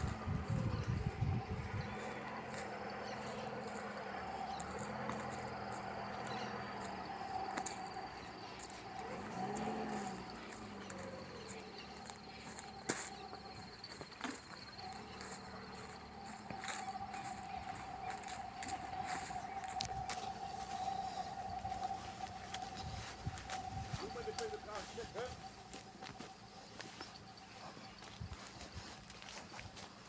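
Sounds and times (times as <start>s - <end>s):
low animal call: 0.0s - 27.8s
insects chirring: 0.0s - 30.0s.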